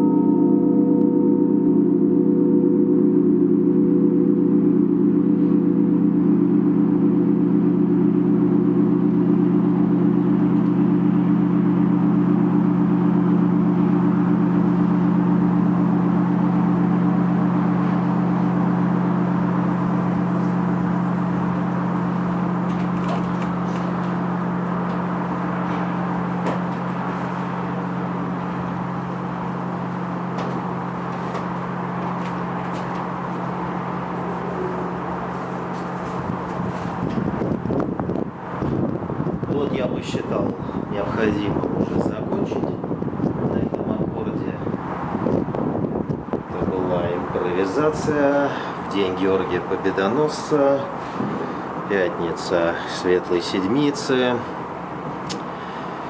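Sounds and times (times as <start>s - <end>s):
church bells ringing: 0.0s - 37.0s
steady background rush: 0.0s - 56.0s.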